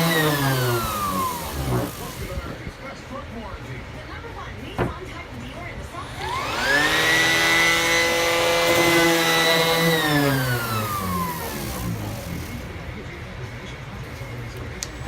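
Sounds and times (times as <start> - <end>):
sander motor whining: 0.0 - 2.7, 6.1 - 12.9.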